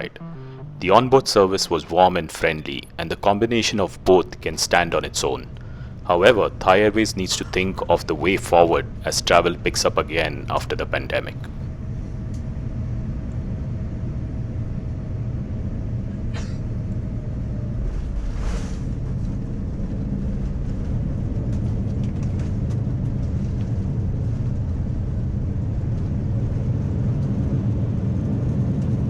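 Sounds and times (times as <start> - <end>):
airliner cabin rumble: 0.0 - 29.0.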